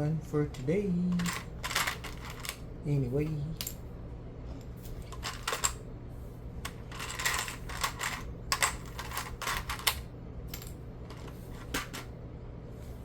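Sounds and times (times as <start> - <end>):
steady low hum: 0.0 - 13.0
plastic pieces clicking and rattling: 1.1 - 2.6, 6.7 - 10.0.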